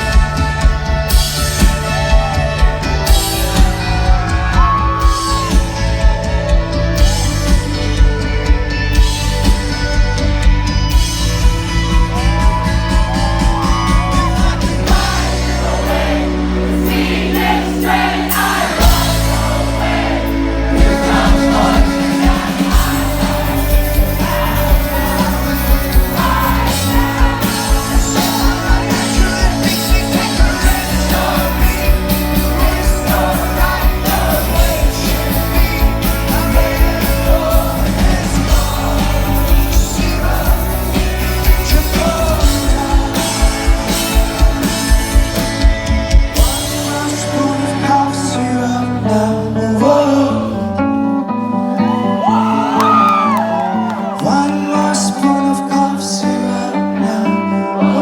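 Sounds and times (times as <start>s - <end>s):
live rock band playing: 0.0s - 58.0s
person singing lead vocals: 13.2s - 58.0s.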